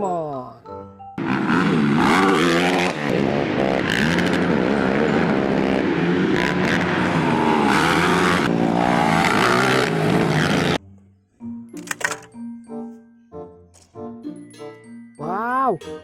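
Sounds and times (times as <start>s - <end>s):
atv engine revving: 1.2s - 10.8s.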